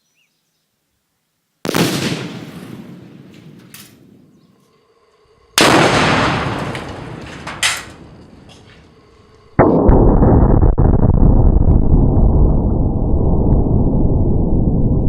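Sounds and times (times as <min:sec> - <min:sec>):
rifle fire: 0:01.6 - 0:04.4, 0:05.6 - 0:08.6
loud explosive bang rumbling: 0:05.6 - 0:08.6, 0:09.6 - 0:15.0
low muffled blast rumbling: 0:05.6 - 0:15.0.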